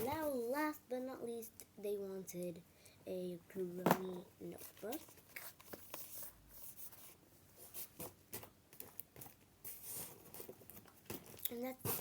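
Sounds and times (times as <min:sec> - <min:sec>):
paper rustling: 0:04.6 - 0:12.0.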